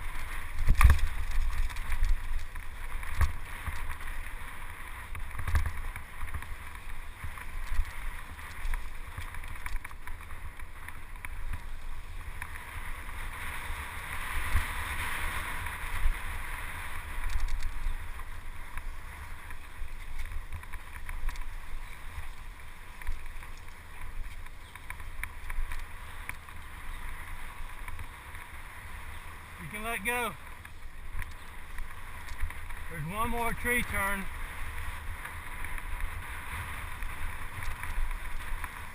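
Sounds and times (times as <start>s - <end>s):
tyres on dirt trail: 0.0s - 38.9s
bike clicks and knocks: 0.5s - 4.2s, 5.0s - 12.7s, 17.2s - 27.1s.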